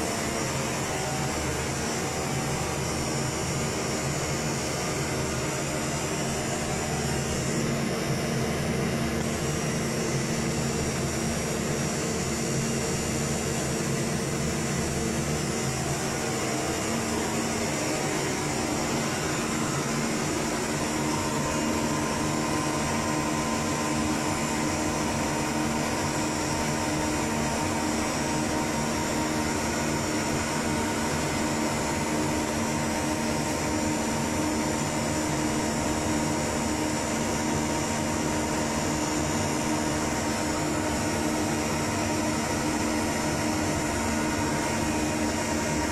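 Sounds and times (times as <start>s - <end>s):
cooling fans whirring: 0.0s - 45.9s
steady humming tones: 0.0s - 45.9s.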